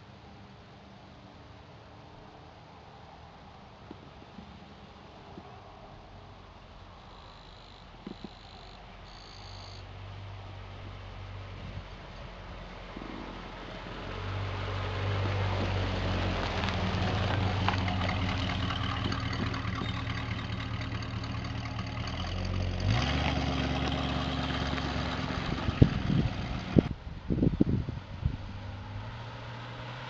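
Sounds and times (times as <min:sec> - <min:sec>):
car engine running: 0:15.1 - 0:27.0.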